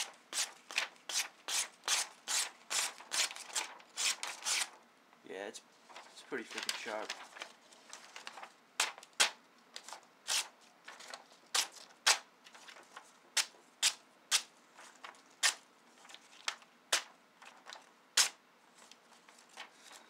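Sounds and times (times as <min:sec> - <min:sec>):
blade slicing paper: 0:00.3 - 0:04.8, 0:10.2 - 0:10.5, 0:18.2 - 0:18.4.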